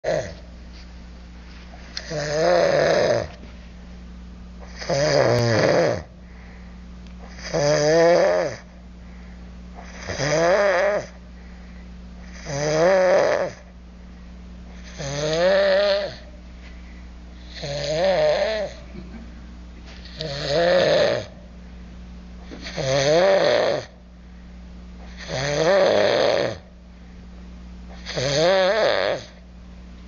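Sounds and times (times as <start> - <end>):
man snoring loudly: 0.0 - 0.4, 2.0 - 3.4, 4.6 - 6.1, 7.3 - 8.7, 9.8 - 11.2, 12.2 - 13.7, 14.8 - 16.2, 17.4 - 18.8, 20.2 - 21.3, 22.6 - 23.9, 25.1 - 26.7, 28.0 - 29.4
steady low hum: 0.0 - 30.0.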